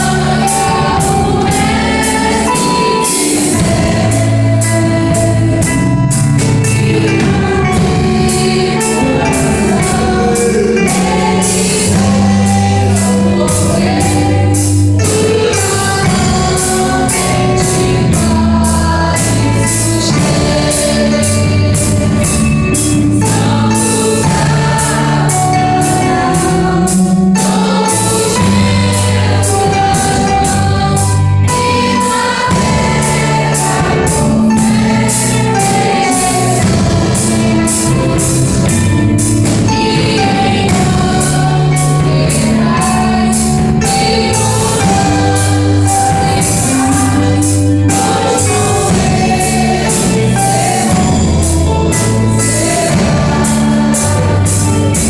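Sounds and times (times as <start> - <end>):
band accompaniment with a beat: 0.0 - 55.0
choir singing a hymn: 0.0 - 55.0.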